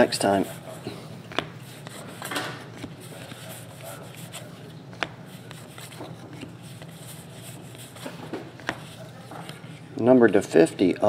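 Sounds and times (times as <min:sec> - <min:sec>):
steady low hum: 0:00.0 - 0:11.0
cards being flipped through: 0:01.3 - 0:09.8.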